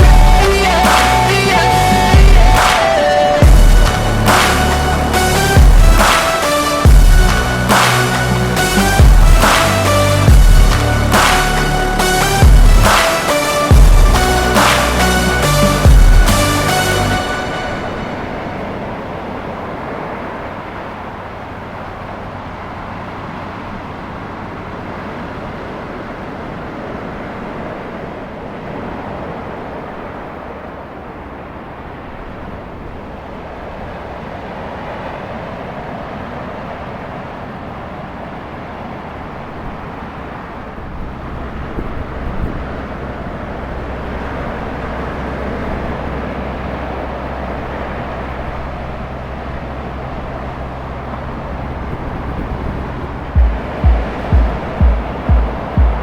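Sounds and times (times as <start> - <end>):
low rumble: 0.0 - 2.8, 3.4 - 18.5, 41.1 - 56.0
ocean surf breaking on beach: 0.0 - 56.0.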